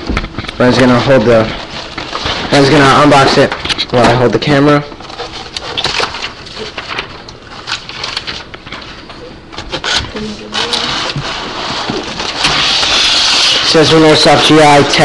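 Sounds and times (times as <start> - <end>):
packaging rustling and crinkling: 0.2 - 4.0, 4.9 - 15.0
crackles scrapes and clicks: 4.8 - 9.0.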